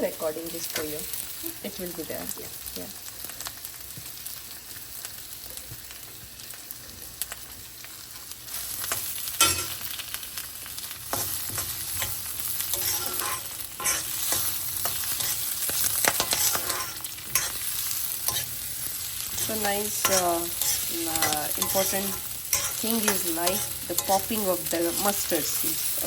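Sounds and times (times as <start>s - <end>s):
onions sizzling in hot oil: 0.0s - 26.0s
spoon scraping pan: 11.1s - 26.0s.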